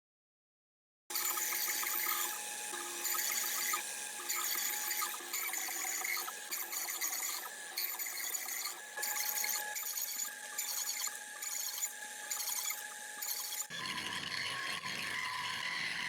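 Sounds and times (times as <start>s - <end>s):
power tool whining on plywood: 1.1s - 16.0s.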